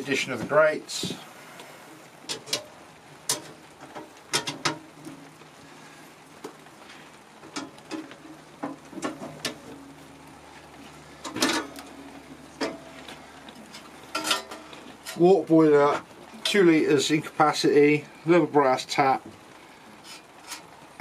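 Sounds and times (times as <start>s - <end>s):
metal stove parts clinking: 2.3s - 2.7s, 3.3s - 4.9s, 11.2s - 11.9s, 12.6s - 13.0s, 13.7s - 15.2s.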